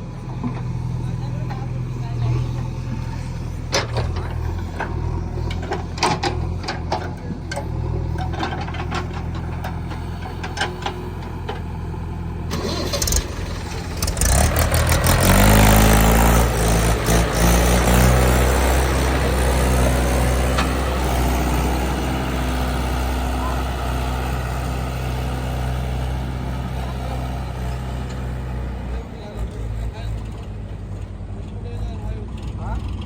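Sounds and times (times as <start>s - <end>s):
diesel engine idling and revving: 0.0s - 33.0s
clicks and clanks: 3.7s - 11.7s.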